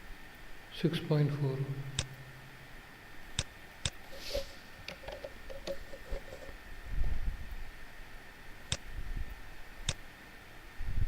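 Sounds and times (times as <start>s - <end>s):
mouse and keyboard clicks: 3.4s - 6.6s.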